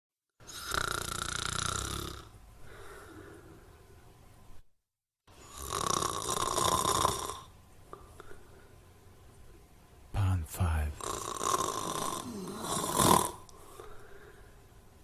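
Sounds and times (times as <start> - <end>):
loud snores: 0.4 - 2.4, 5.4 - 7.5, 11.0 - 13.5
quiet breathing: 2.6 - 4.1, 7.9 - 9.2, 13.5 - 14.9.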